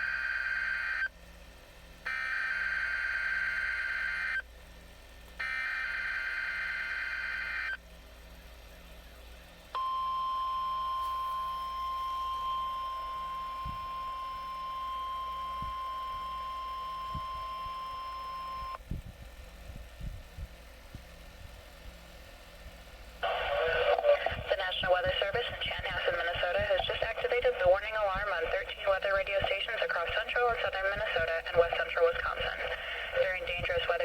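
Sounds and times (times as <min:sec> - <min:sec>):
steady warning alarm tone: 0:00.0 - 0:01.1, 0:02.1 - 0:04.4, 0:05.4 - 0:07.8, 0:09.8 - 0:18.8.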